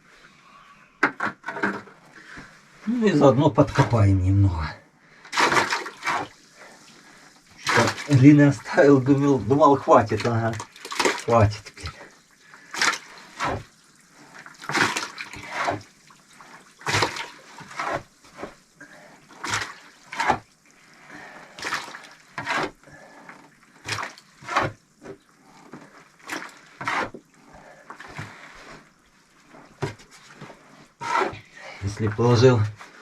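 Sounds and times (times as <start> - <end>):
digging tool scraping clay: 13.0 - 13.6, 14.7 - 15.9, 16.9 - 18.6, 22.4 - 22.8, 23.9 - 24.8, 26.8 - 27.2, 29.6 - 31.6.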